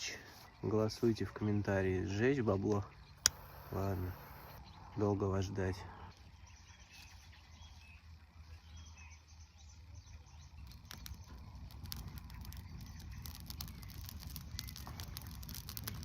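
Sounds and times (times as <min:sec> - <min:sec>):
faint bird chirps: 0:00.0 - 0:16.0
small sharp clicks and crackles: 0:02.7 - 0:04.6, 0:10.2 - 0:16.0.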